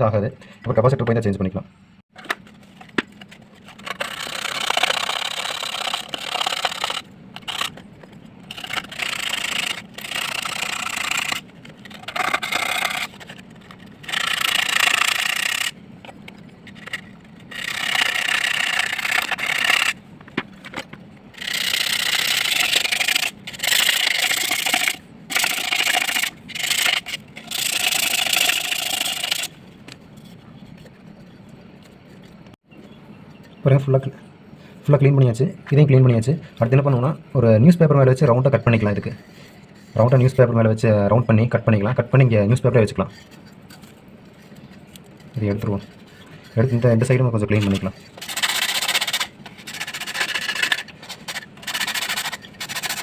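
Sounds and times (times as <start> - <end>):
metal rubbing on emery sheet: 3.6 - 15.8, 16.5 - 20.0, 20.6 - 29.5, 45.4 - 53.0.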